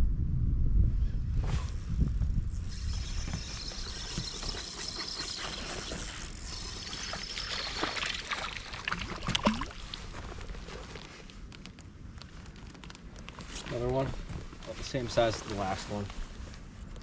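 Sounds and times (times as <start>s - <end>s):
water splashing and trickling: 3.2s - 11.3s
sharp splashes: 6.8s - 10.1s.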